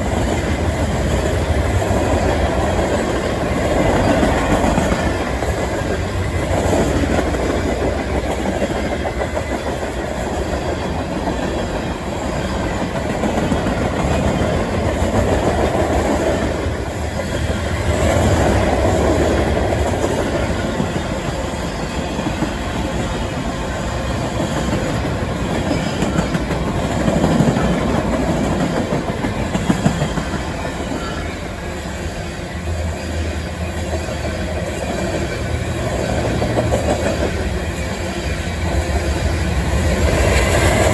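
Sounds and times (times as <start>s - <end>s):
train wheels clicking over rail joints: 0.0s - 40.9s.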